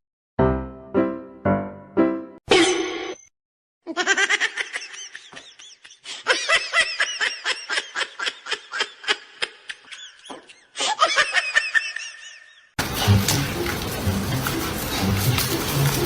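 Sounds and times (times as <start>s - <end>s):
person giggling: 3.9s - 12.7s.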